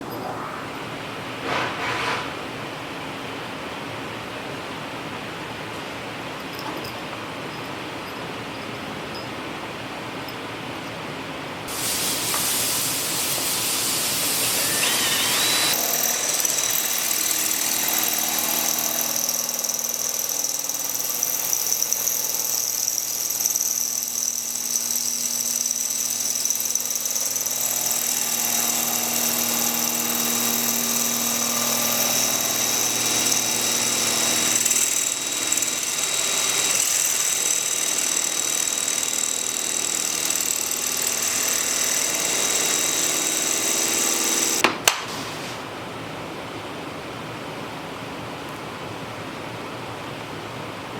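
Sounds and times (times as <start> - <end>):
power drill drilling: 11.7 - 44.6.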